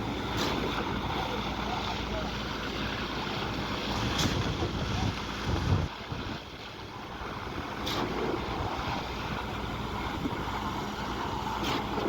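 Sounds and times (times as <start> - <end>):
wind noise on microphone: 3.9 - 12.0.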